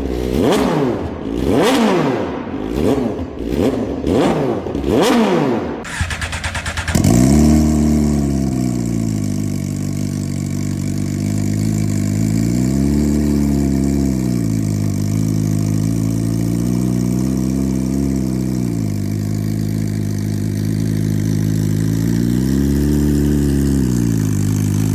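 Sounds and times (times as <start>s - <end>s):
motorcycle engine idling: 5.7s - 24.9s
starter motor cranking: 5.9s - 7.4s.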